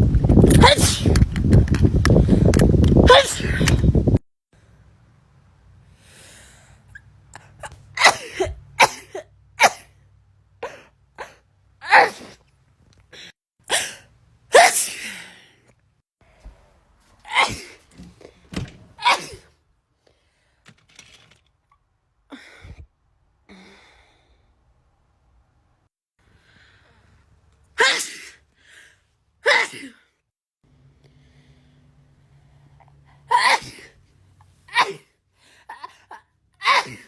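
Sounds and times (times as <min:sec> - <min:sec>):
person sneezing: 0:00.5 - 0:01.1, 0:10.6 - 0:12.4, 0:13.7 - 0:15.4, 0:17.3 - 0:17.8, 0:19.0 - 0:19.5, 0:27.8 - 0:28.4, 0:29.4 - 0:30.0, 0:33.3 - 0:33.9, 0:34.7 - 0:35.1, 0:36.6 - 0:37.0.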